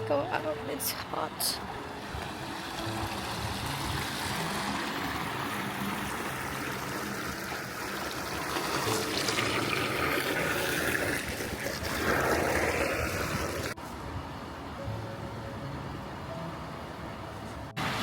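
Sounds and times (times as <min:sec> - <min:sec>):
water running and trickling: 0:02.2 - 0:13.8.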